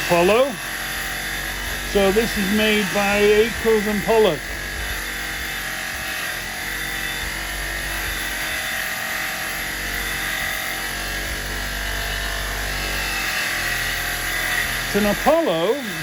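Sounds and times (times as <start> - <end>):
small electric motor whine: 0.0 - 16.0.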